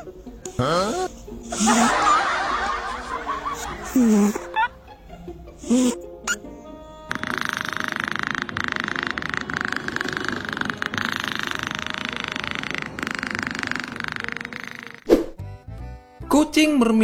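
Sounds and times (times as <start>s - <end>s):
cat purring: 7.4s - 15.0s.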